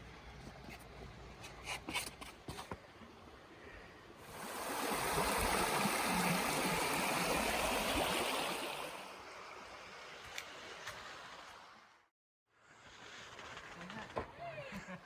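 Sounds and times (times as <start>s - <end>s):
waterfall rushing: 4.3s - 9.0s.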